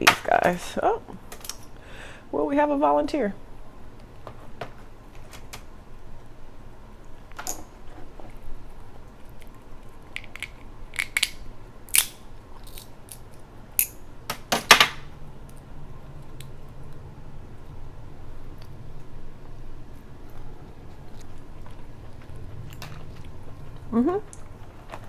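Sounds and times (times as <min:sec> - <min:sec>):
crab shell cracking: 0:09.3 - 0:14.0.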